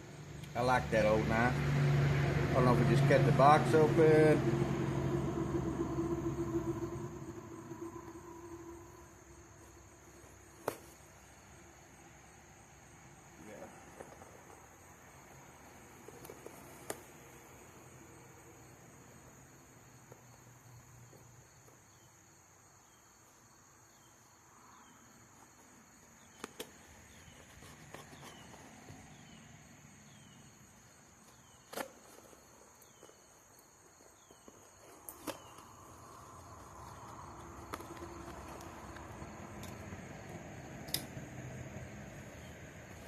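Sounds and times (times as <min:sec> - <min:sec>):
high steady hum: 0:02.7 - 0:10.6
rustling and scraping: 0:26.4 - 0:29.1.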